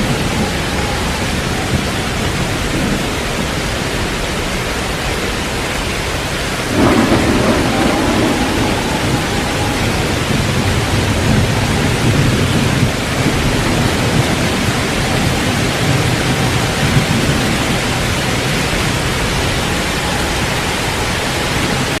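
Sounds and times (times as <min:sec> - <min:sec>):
heavy rain downpour: 0:00.0 - 0:22.0
thunder rumbling: 0:00.0 - 0:22.0.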